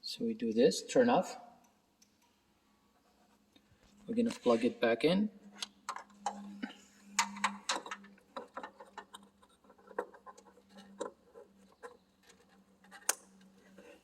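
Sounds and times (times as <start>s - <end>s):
low steady hum: 0.0s - 14.0s
clicks and rattles of wiring: 5.6s - 13.8s.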